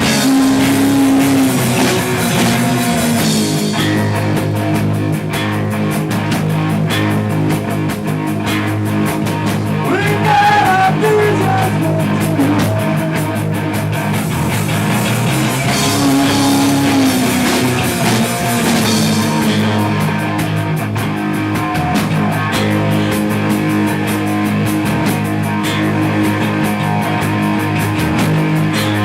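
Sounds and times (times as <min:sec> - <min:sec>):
drum kit: 0:00.0 - 0:29.0
electric guitar: 0:00.0 - 0:29.0
person singing: 0:09.8 - 0:13.6, 0:15.7 - 0:19.8.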